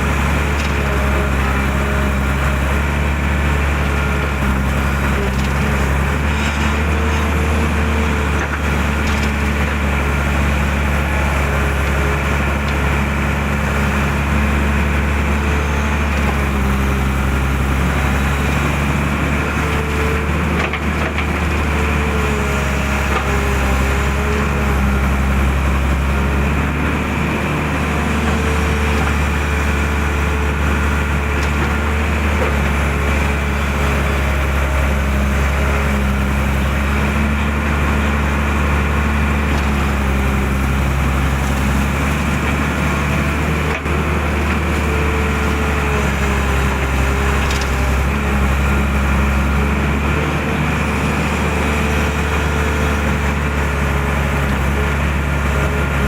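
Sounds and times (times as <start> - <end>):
diesel engine humming: 0.0 - 56.0.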